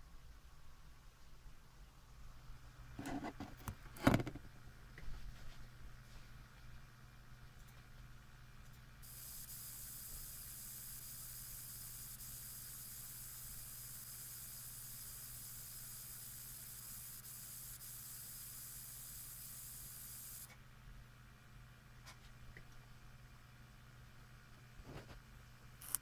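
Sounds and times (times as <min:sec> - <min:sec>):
steady low hum: 0:00.0 - 0:26.0
high-pitched hissing whine: 0:09.0 - 0:20.5.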